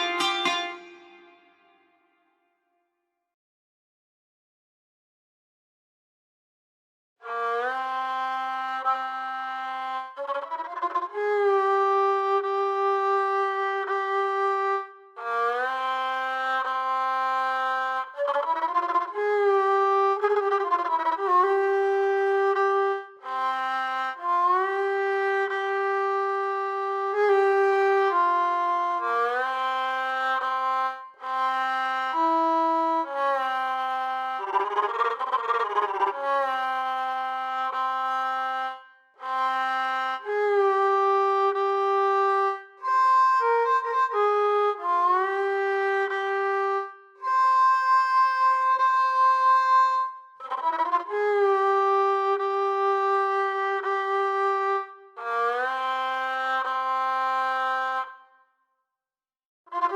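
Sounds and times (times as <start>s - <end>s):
sliding melodic instrument solo: 0.0s - 1.8s.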